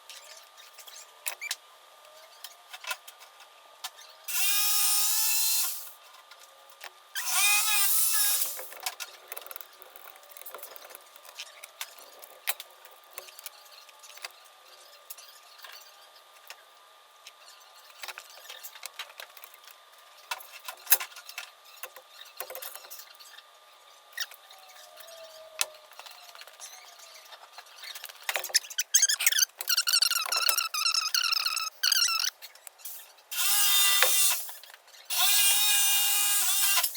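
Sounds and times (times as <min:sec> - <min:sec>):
small metal parts clicking: 0:27.6 - 0:33.0
short high squeals: 0:28.5 - 0:32.4.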